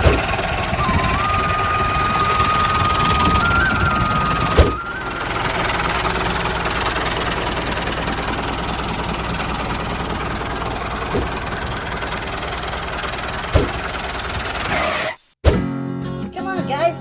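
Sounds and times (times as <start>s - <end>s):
small machine running: 0.0s - 14.7s
short knocks: 11.0s - 11.6s, 13.5s - 14.0s.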